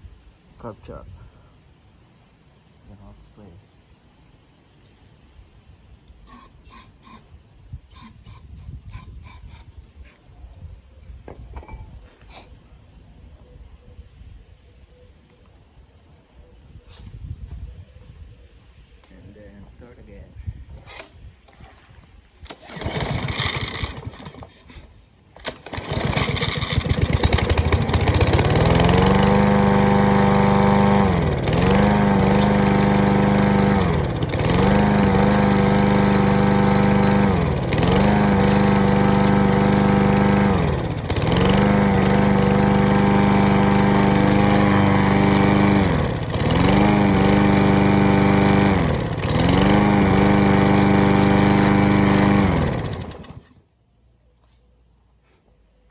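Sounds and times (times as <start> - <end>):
lawn mower engine surging: 22.4 - 53.6.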